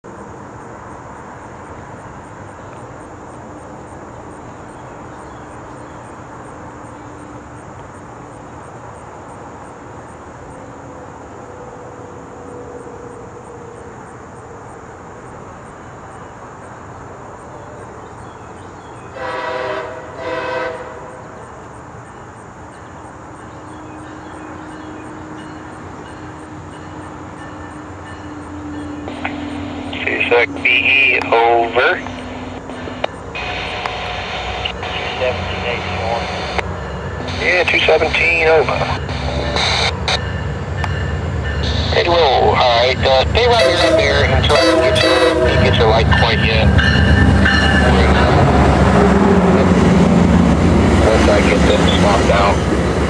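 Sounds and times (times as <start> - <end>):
train engine rumbling: 0.0 - 53.0
train air horn blasts: 19.1 - 21.2, 43.3 - 49.9.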